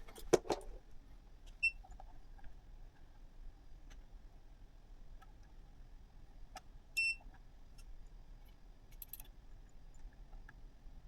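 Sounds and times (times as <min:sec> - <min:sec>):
handling noise: 0:00.0 - 0:00.8.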